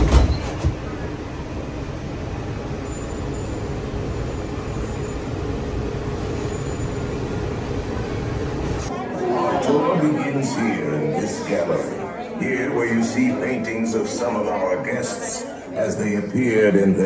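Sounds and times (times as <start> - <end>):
monorail low rumble: 0.0 - 9.7.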